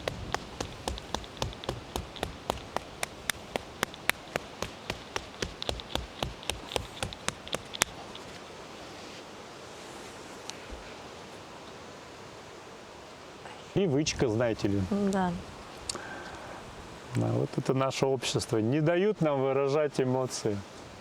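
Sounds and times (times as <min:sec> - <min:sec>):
hand tapping on leg: 0:00.0 - 0:08.2
faint hiss: 0:00.0 - 0:21.0.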